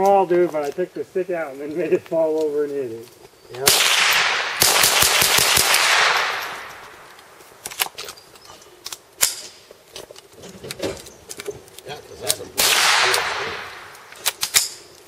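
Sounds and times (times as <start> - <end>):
rifle shots echoing: 3.6 - 7.8, 12.6 - 14.8
sharp clicks: 11.3 - 15.0.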